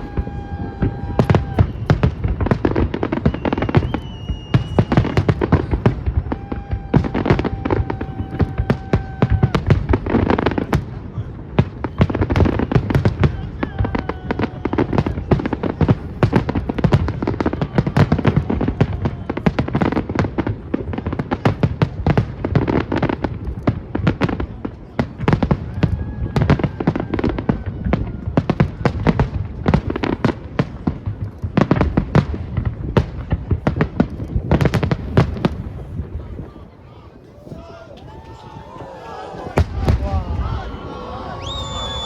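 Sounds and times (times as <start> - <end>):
fireworks bangs and crackling: 0.0 - 42.0.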